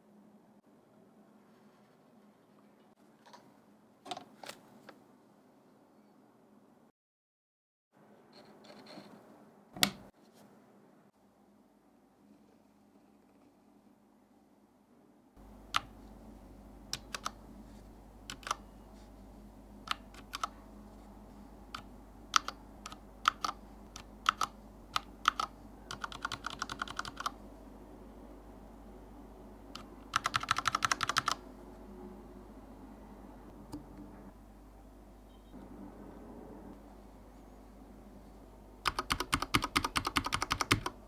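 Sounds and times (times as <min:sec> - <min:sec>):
rapid keystrokes: 0:15.7 - 0:16.0, 0:16.9 - 0:17.4, 0:18.3 - 0:18.6, 0:19.9 - 0:20.5, 0:21.7 - 0:27.4, 0:29.8 - 0:31.4, 0:38.8 - 0:41.0.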